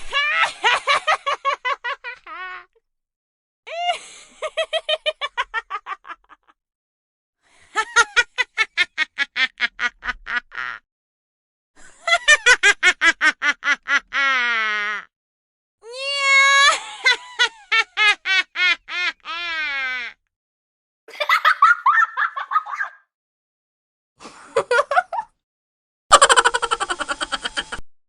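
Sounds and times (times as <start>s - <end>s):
high-pitched laughter effects: 21.1s - 23.0s, 26.1s - 27.8s.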